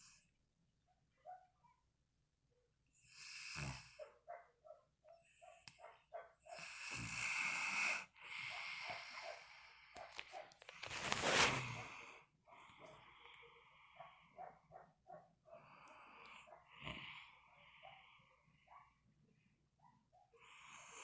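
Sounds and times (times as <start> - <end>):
dog snoring: 3.1 - 4.1, 6.5 - 9.7
dog snuffling: 10.3 - 11.8.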